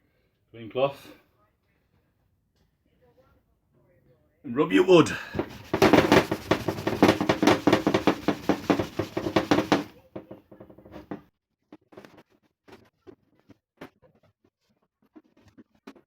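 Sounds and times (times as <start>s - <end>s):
cloth rubbing on wood: 4.8s - 11.2s
light taps: 5.3s - 11.2s.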